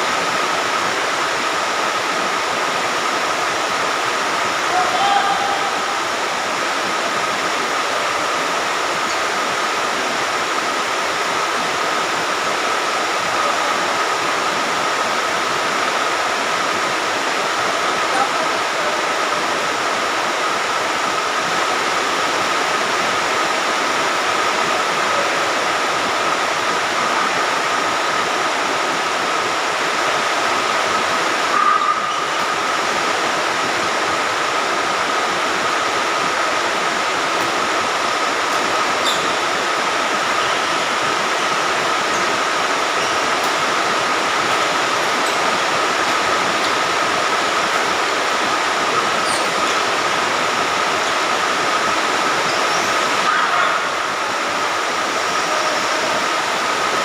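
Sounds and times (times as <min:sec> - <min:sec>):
steady rain falling: 0:00.0 - 0:57.0
faint high steady tone: 0:31.5 - 0:32.5.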